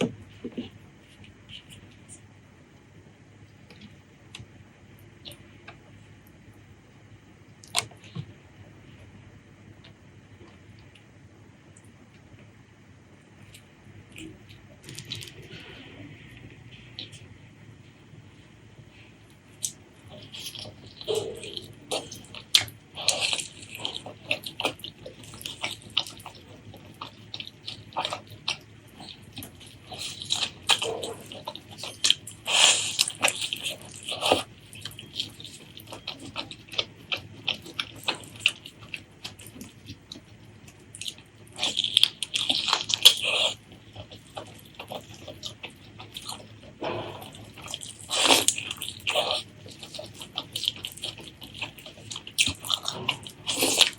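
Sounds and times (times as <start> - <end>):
wet chewing and lip-smacking: 13.4 - 17.3, 19.3 - 53.9.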